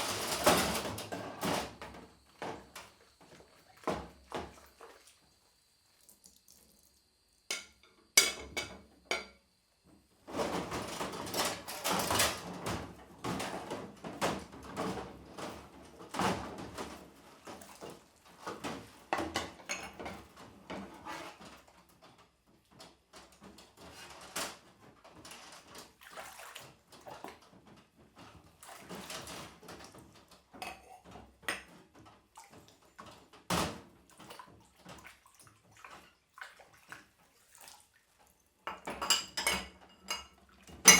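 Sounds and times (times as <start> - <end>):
water splashing in sink: 2.4 - 6.9, 16.1 - 21.7, 25.2 - 27.6, 28.3 - 30.7, 31.4 - 33.3, 33.9 - 40.9
dishes clattering: 7.5 - 9.4, 19.2 - 20.3, 30.6 - 31.7, 38.7 - 40.9.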